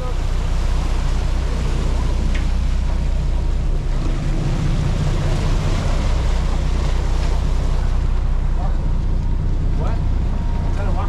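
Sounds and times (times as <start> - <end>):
boat engines droning: 0.0 - 11.0
water rushing along hull: 0.0 - 11.0.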